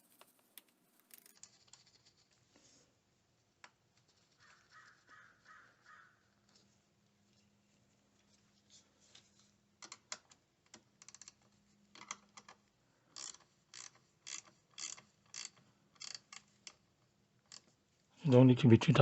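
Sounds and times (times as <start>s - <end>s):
socket ratchet clicking: 12.0s - 16.8s.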